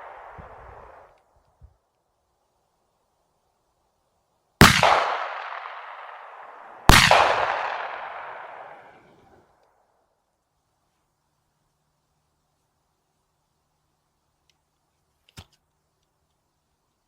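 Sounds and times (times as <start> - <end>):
shotgun shots with echo: 4.6 - 9.1.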